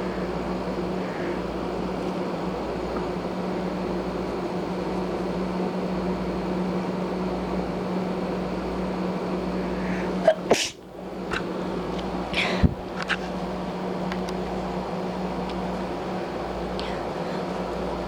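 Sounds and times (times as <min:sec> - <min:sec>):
steady background hum: 0:00.0 - 0:18.0
person sneezing: 0:10.2 - 0:10.8.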